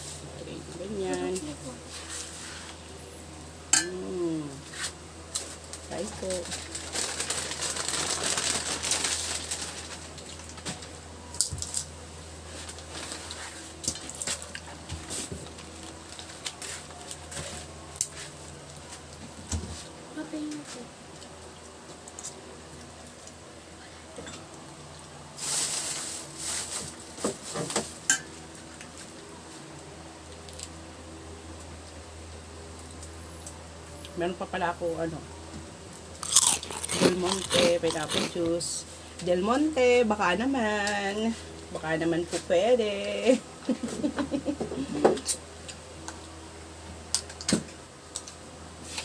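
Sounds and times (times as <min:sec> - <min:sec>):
low steady hum: 0:00.0 - 0:49.0
packaging rustling: 0:06.4 - 0:10.2.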